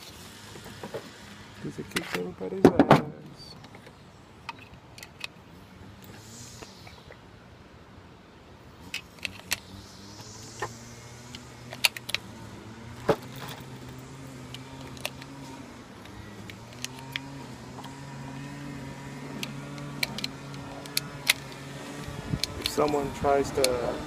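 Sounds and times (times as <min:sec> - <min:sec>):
low motor hum: 0:09.2 - 0:24.0.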